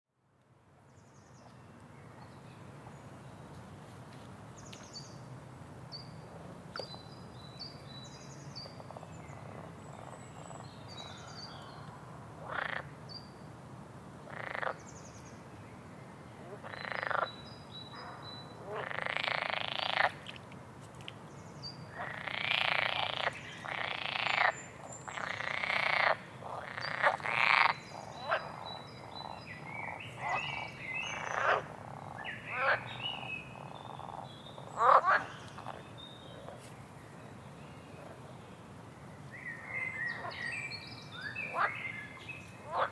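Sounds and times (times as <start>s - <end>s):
songbird high chirps: 39.2s - 42.6s.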